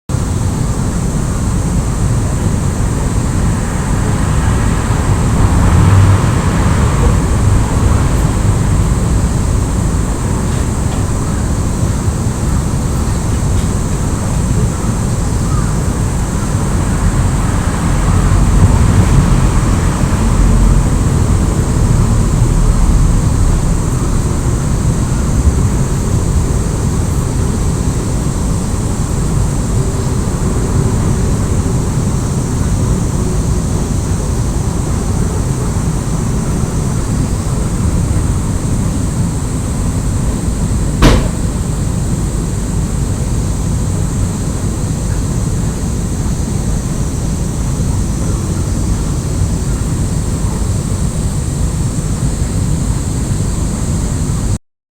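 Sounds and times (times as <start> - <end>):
water heater rumbling: 0.4 - 32.2, 36.0 - 43.0.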